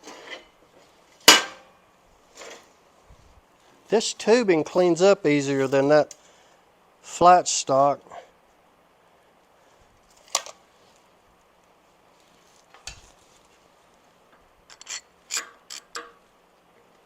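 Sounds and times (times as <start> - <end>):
metal tubing clicks and knocks: 14.3 - 16.2.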